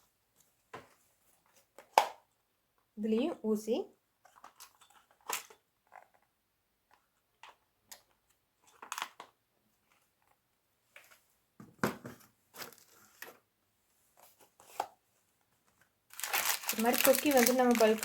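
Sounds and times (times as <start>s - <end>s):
packets crinkling: 16.1s - 18.0s.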